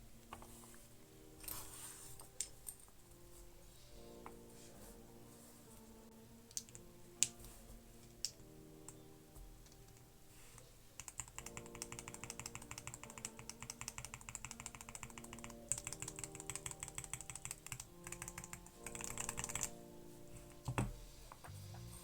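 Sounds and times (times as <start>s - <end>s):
mechanical keyboard typing: 11.0s - 19.8s.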